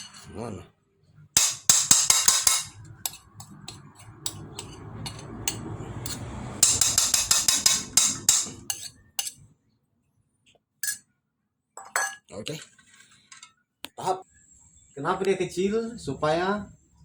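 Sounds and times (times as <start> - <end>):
sharp metallic clicks and knocks: 1.4 - 8.8.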